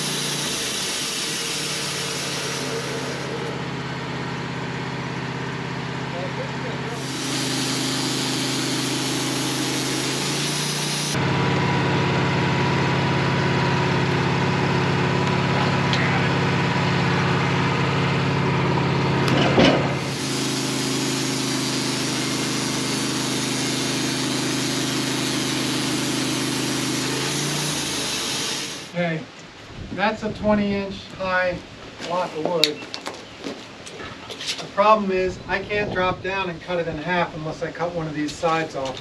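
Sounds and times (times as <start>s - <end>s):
loud rasp: 0.0s - 3.6s, 6.9s - 11.2s, 20.0s - 29.0s
sawmill engine running: 0.0s - 29.0s.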